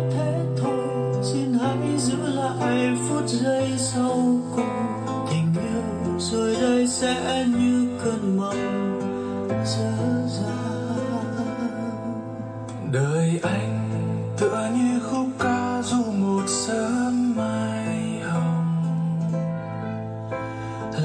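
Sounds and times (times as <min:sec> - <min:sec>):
acoustic guitar: 0:00.0 - 0:21.0.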